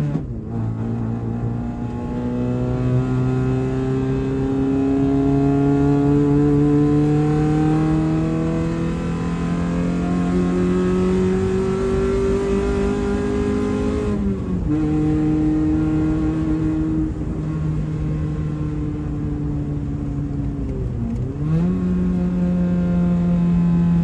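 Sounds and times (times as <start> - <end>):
car engine accelerating: 0.0 - 24.0.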